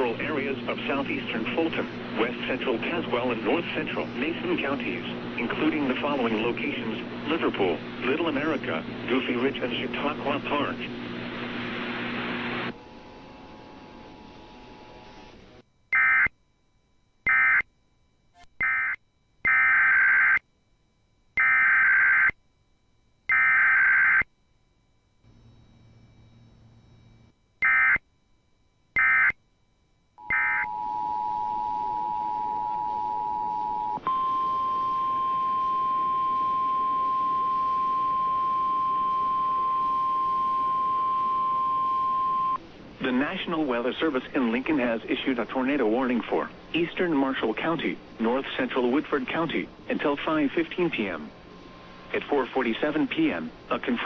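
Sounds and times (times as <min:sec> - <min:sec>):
steady single-pitch alarm tone: 0:12.7 - 0:42.6
two-tone attention signal: 0:30.2 - 0:42.6.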